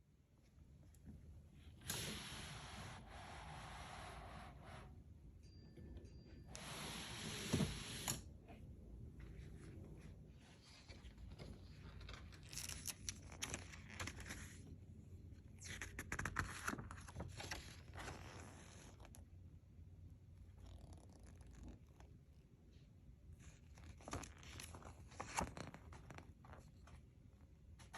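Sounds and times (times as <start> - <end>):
packaging rustling and tearing: 11.3 - 14.5.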